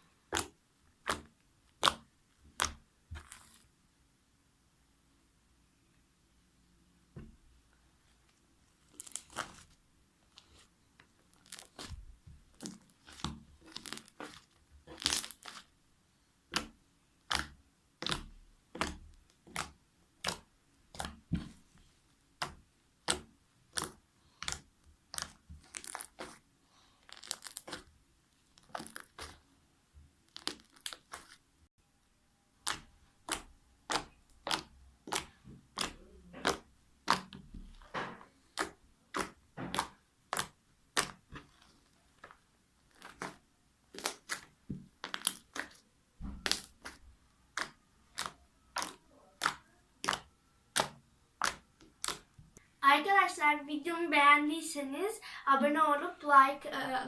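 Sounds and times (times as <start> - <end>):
slime popping and crackling: 0.3 - 3.7, 8.8 - 9.8, 11.2 - 15.7, 16.4 - 21.6, 22.4 - 29.5, 30.2 - 31.4, 32.6 - 52.5.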